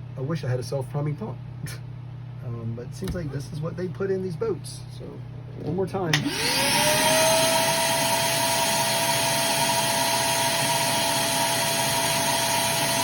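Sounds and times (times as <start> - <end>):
electric motor whining: 6.2 - 13.0.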